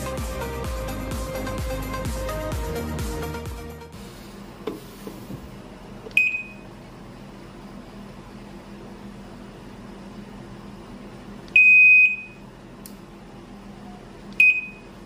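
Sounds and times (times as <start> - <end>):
washing machine beeper: 6.1 - 6.8, 11.5 - 12.5, 14.4 - 15.0.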